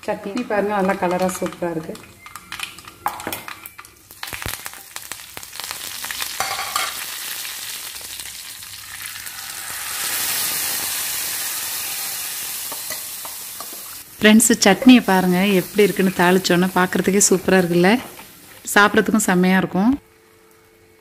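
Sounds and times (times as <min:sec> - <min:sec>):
oil sizzling: 0:00.0 - 0:19.5
seeds popping in hot oil: 0:00.2 - 0:11.2.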